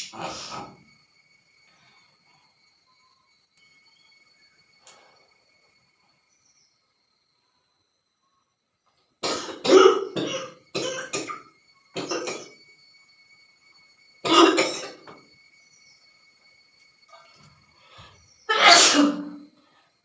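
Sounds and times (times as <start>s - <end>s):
woman coughing: 9.2s - 11.4s, 12.0s - 12.5s, 14.3s - 15.0s, 18.5s - 19.4s.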